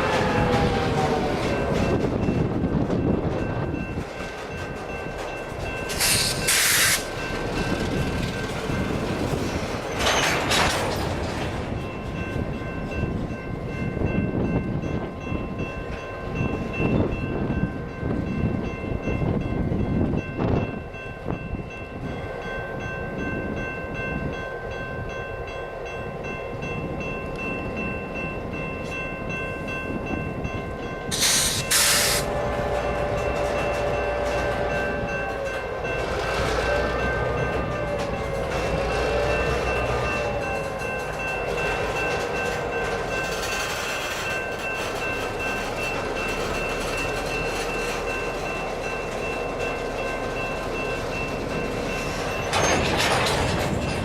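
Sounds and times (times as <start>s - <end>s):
diesel locomotive rumbling: 0.0s - 54.0s
short hissing bursts: 6.0s - 7.1s, 31.2s - 32.3s.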